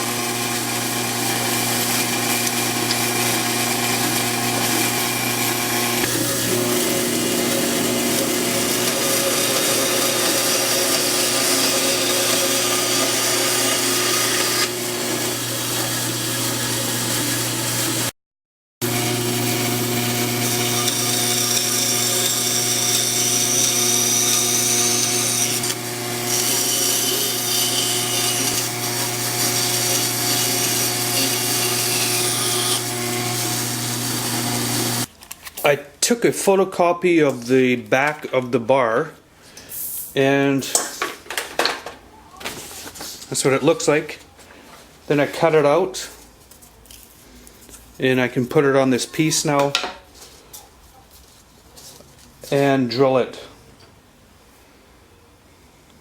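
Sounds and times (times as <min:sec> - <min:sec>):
power saw cutting plywood: 0:00.0 - 0:18.1, 0:18.8 - 0:35.1.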